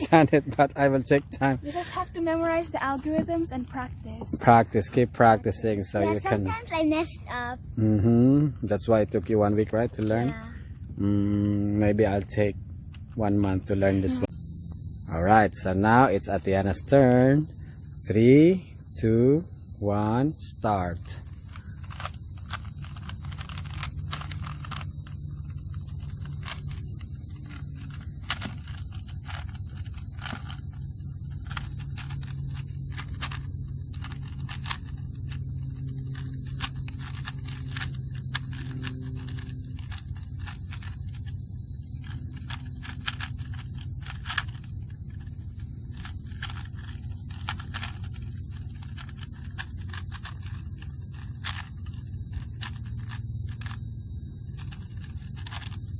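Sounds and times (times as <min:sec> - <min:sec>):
puzzle cube clicking: 0:20.6 - 0:41.4, 0:42.0 - 0:55.9.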